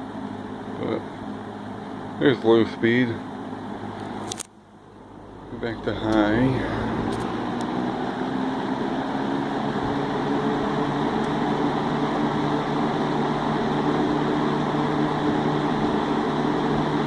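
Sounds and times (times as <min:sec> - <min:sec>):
box fan running: 0:00.0 - 0:17.0.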